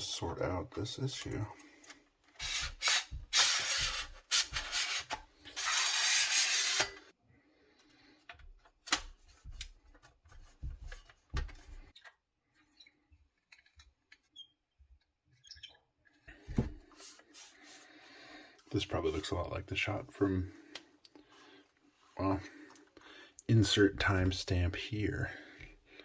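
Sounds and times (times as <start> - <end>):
rubbing and rasping handling noise: 1.0 - 7.1.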